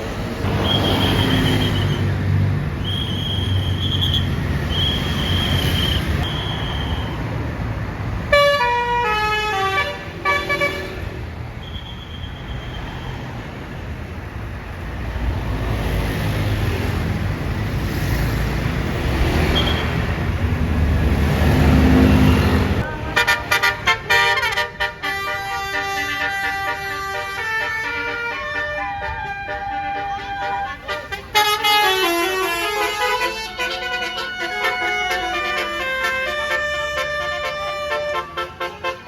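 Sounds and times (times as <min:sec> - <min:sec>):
bus engine rumble: 0:00.0 - 0:39.0
bus musical horn playing notes: 0:08.3 - 0:11.2, 0:22.6 - 0:39.0.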